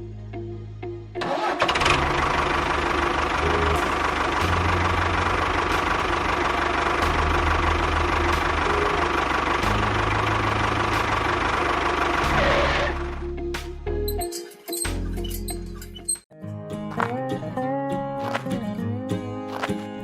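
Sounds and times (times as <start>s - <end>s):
background music: 0.0s - 20.0s
small engine rattling: 1.2s - 13.1s.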